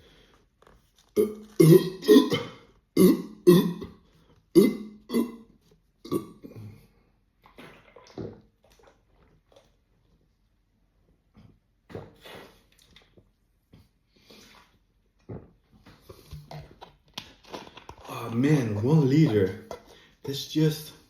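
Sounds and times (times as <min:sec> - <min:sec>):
man belching: 0:01.2 - 0:04.0, 0:04.6 - 0:05.4, 0:06.0 - 0:06.7.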